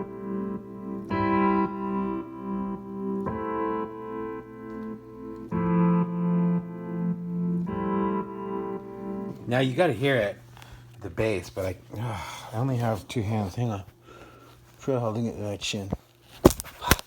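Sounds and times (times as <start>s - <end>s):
electric piano pumping chords: 0.0s - 10.6s.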